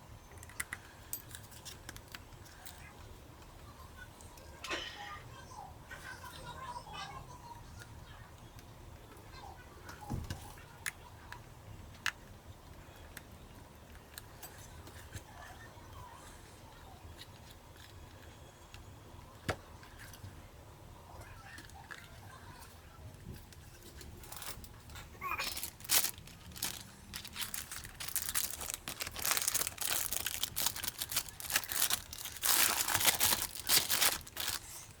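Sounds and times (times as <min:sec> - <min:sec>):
crinkling and rustling: 0:21.4 - 0:35.0.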